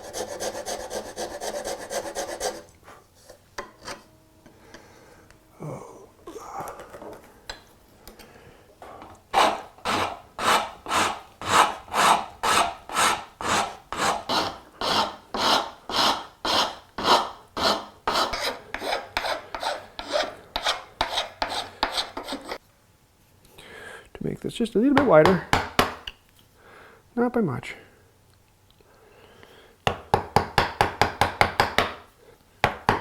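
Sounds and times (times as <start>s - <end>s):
rasp shaping wood: 0.0s - 2.7s, 9.3s - 22.6s.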